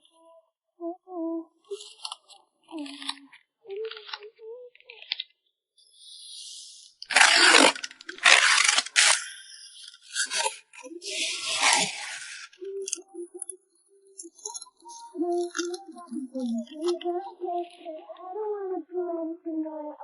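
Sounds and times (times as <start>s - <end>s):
packing materials rustling: 6.9s - 13.0s.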